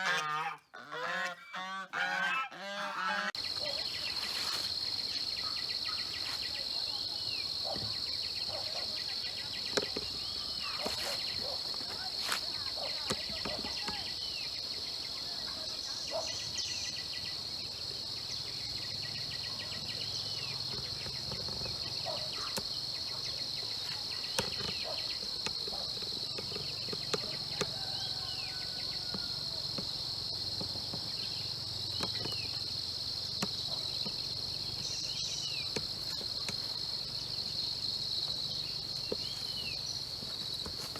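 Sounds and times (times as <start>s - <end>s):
crickets droning: 0.0s - 40.9s.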